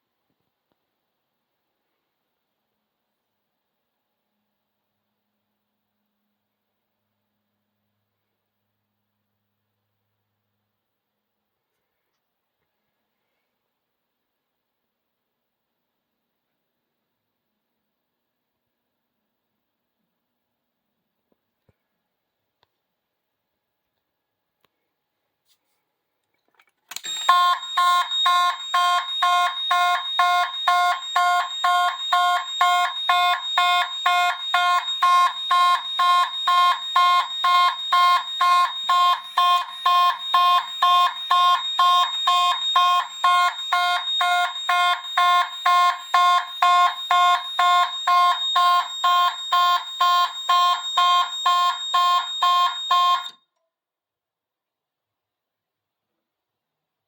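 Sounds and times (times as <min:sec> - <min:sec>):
shrill pulsing fire alarm: 0:26.9 - 0:53.5.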